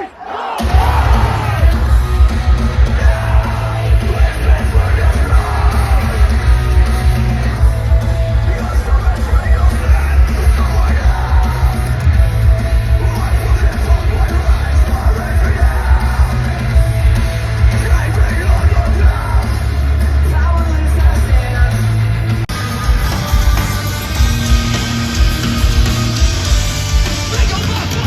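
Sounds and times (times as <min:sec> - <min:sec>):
distorted guitars: 0:00.5 - 0:28.0
heavy bass and drums: 0:00.5 - 0:28.0
person yelling and singing: 0:27.3 - 0:28.0.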